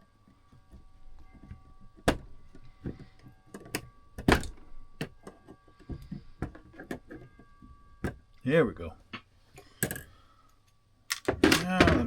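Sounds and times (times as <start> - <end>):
small metal tools clicking on clockwork: 11.1 - 11.8.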